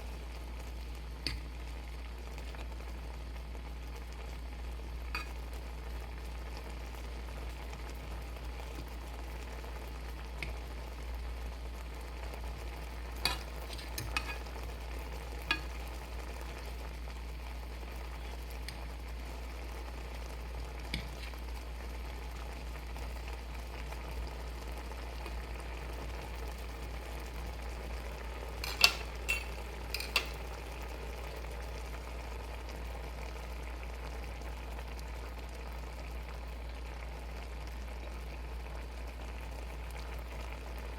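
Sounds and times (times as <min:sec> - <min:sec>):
steady low hum: 0:00.0 - 0:32.4
shrimp sizzling in a pan: 0:00.0 - 0:40.9.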